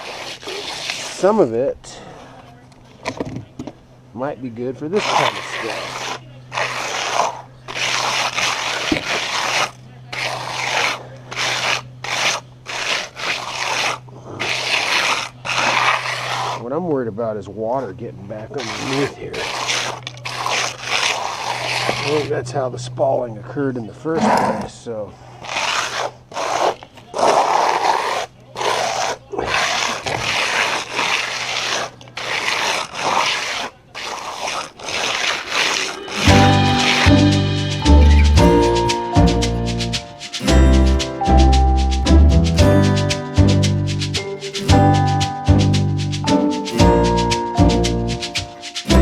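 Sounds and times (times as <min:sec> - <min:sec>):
trowel scraping wet concrete: 0:00.0 - 0:02.1, 0:04.8 - 0:16.7, 0:18.3 - 0:22.4, 0:25.4 - 0:49.0
music: 0:36.2 - 0:49.0.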